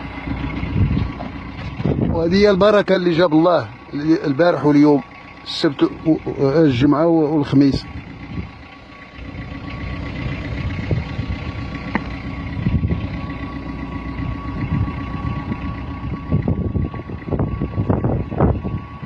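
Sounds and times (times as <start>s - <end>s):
engine idling: 0.0s - 19.0s.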